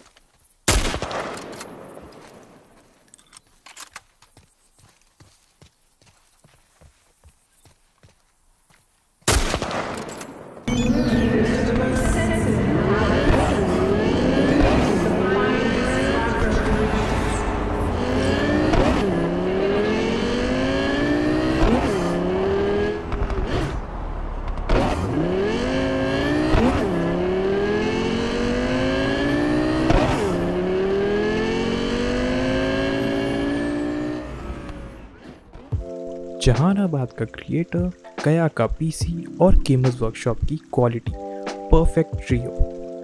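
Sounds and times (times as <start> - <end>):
car engine revving through gears: 10.7 - 35.8.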